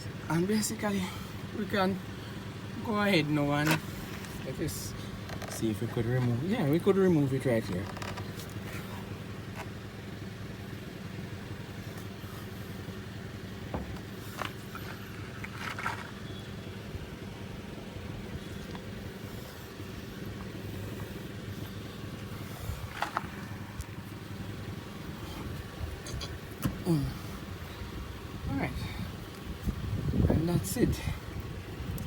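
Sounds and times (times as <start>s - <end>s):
engine idling hum: 0.0s - 32.0s.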